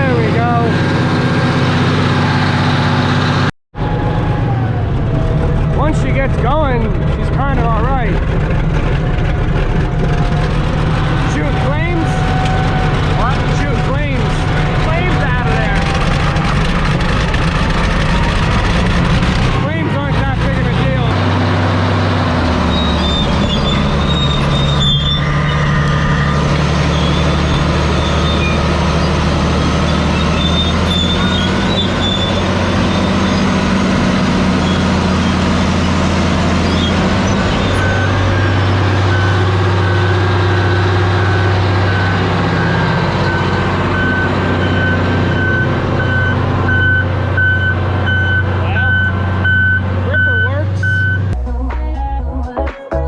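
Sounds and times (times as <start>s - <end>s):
bulldozer diesel engine running: 0.0s - 52.7s
reverse alarm beeping: 37.2s - 51.4s.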